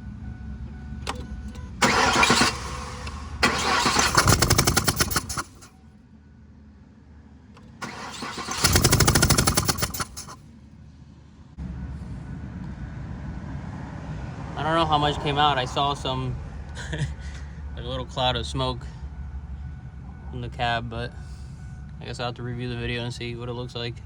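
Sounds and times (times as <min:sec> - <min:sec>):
engine cranking by starter: 0:01.0 - 0:05.7, 0:07.6 - 0:10.4.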